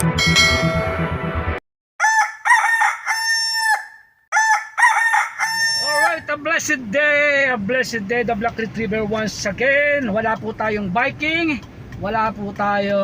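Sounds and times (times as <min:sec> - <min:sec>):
music: 0:00.0 - 0:01.6
rooster crowing: 0:02.0 - 0:06.3.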